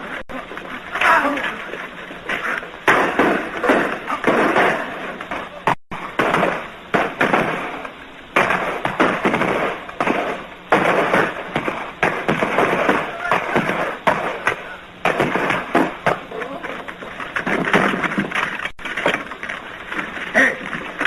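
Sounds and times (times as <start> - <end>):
gunshots echoing: 2.4 - 16.3.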